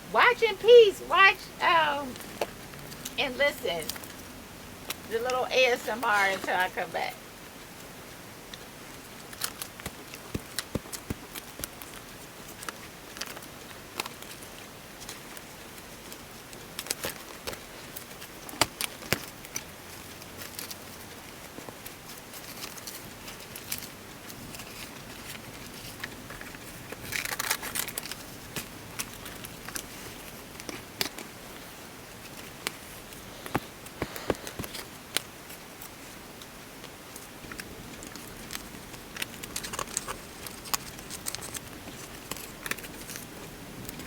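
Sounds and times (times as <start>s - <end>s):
faint steady hiss: 0.0s - 44.0s
paper crinkling: 22.3s - 36.2s, 37.4s - 44.0s.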